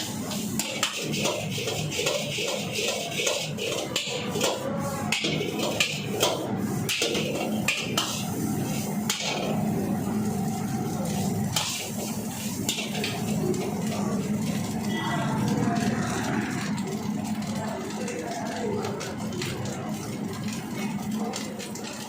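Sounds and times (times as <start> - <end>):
metal spatula clanking on wok: 0.2 - 8.3.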